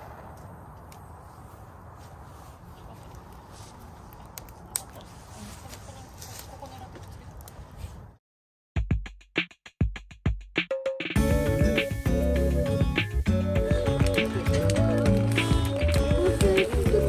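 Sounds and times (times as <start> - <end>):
open-air background noise: 0.0 - 8.2
music with drum hits: 8.8 - 17.0.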